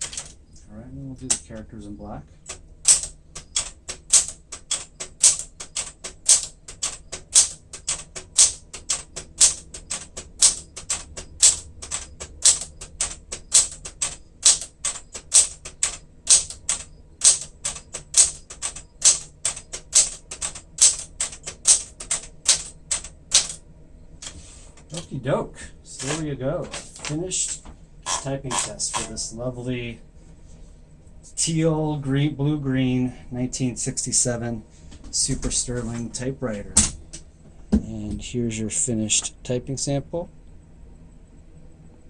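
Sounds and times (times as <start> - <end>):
manual typewriter typing: 0.0 - 0.5, 1.2 - 1.7, 2.4 - 23.6, 25.9 - 29.3.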